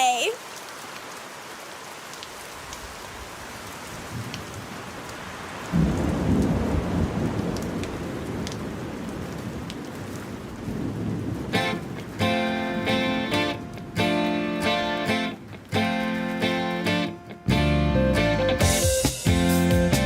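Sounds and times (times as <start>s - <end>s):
steady rain falling: 0.0s - 20.0s
thunder clap rumbling: 5.7s - 14.0s.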